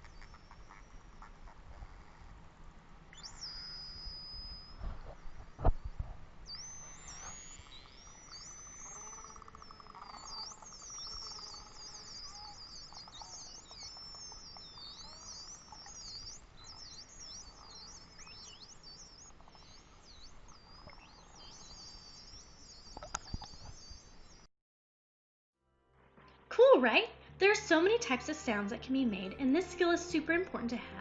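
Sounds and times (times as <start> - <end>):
dolphin whistles: 3.1 - 4.9, 6.5 - 24.5.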